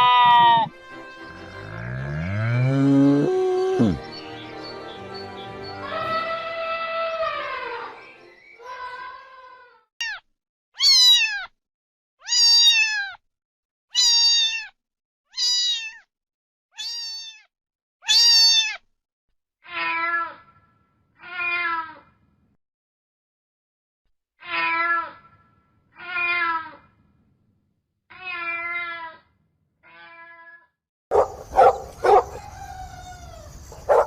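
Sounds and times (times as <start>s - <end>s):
cat meowing: 0.0s - 0.7s, 10.8s - 11.5s, 12.2s - 13.2s, 14.0s - 14.8s, 15.4s - 16.0s, 16.8s - 18.8s, 24.4s - 25.2s, 26.0s - 26.8s, 28.1s - 29.2s.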